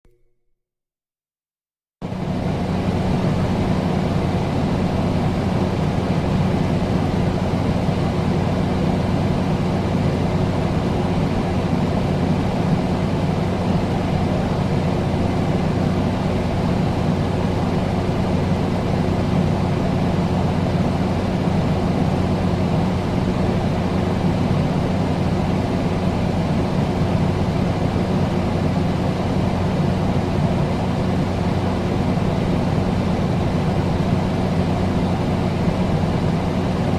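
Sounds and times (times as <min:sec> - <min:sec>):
air conditioner running: 0:02.0 - 0:36.9.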